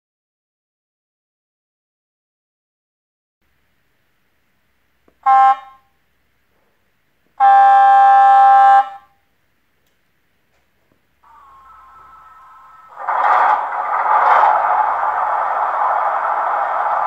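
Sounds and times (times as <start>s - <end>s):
horn blasts: 5.2s - 6.0s, 7.4s - 9.2s, 11.2s - 17.0s.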